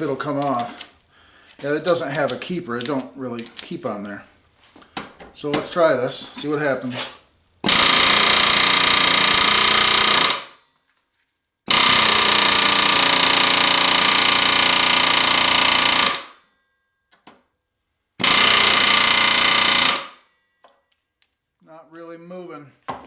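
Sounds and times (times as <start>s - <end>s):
pneumatic air hammer: 7.6s - 10.6s, 11.7s - 16.4s, 18.2s - 20.2s.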